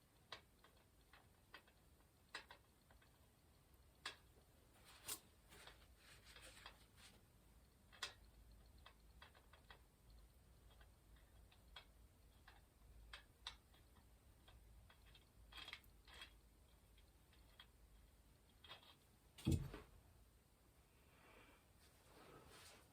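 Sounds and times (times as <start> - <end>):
small metal parts clicking: 0.1 - 3.2, 7.9 - 17.8, 18.5 - 19.0.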